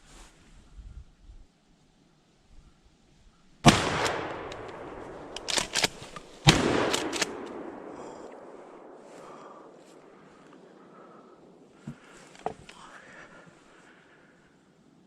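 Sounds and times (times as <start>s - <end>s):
shotgun shots echoing: 3.6s - 9.8s.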